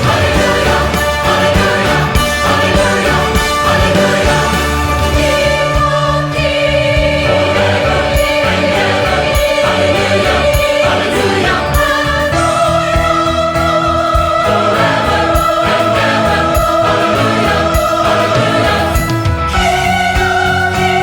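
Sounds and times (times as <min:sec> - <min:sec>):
choir singing with orchestra: 0:00.0 - 0:21.0.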